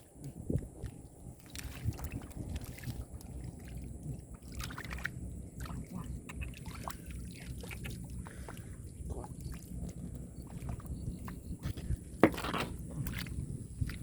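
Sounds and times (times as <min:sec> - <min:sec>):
low steady rumble: 0:00.0 - 0:14.0
hands splashing in shallow water: 0:00.9 - 0:03.8, 0:04.4 - 0:09.7.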